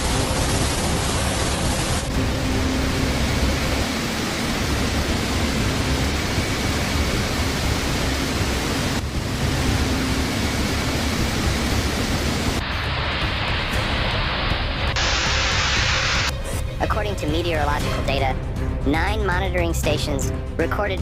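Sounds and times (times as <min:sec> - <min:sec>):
rushing water roar: 0:00.0 - 0:16.3.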